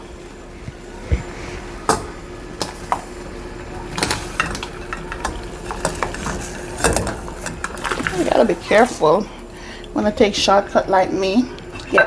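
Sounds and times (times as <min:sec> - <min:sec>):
potatoes thumping into pot: 0:01.9 - 0:09.2
clinks and knocks against pot: 0:01.9 - 0:10.7.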